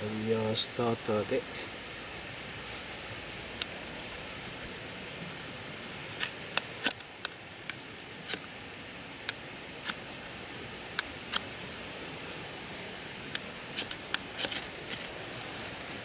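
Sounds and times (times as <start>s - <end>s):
ferro rod scraping: 2.8s - 4.9s, 6.0s - 7.1s, 11.0s - 16.0s.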